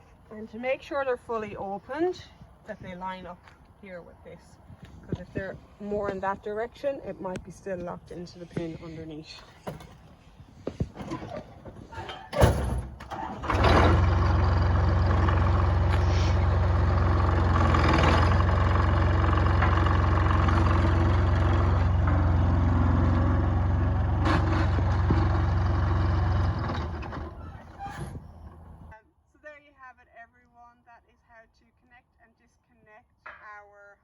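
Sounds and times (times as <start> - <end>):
engine running steadily: 12.4 - 28.9.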